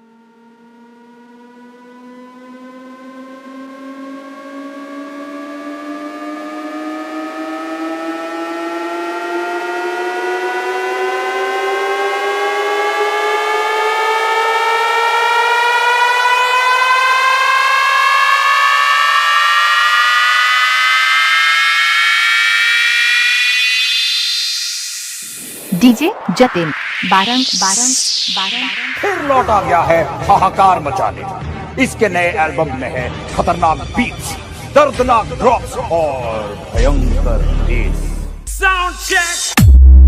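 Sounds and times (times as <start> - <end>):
synth siren riser: 0.0 - 40.0
rising noise wash: 15.0 - 31.8.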